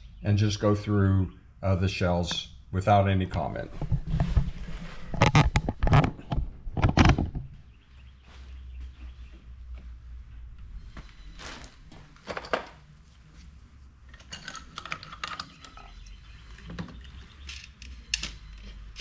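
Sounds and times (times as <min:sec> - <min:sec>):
scratchy rattling of hulls: 0:03.3 - 0:07.6.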